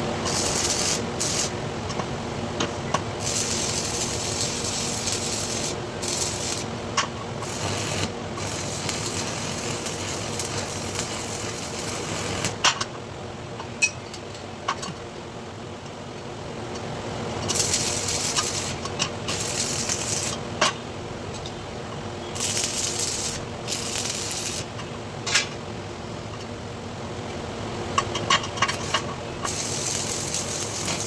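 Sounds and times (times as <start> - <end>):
arc welding crackling hiss: 0.0 - 2.0, 3.0 - 12.7, 17.3 - 20.5, 22.3 - 24.8, 28.6 - 31.0
steady hum: 0.0 - 12.7, 16.9 - 25.2, 27.5 - 31.0.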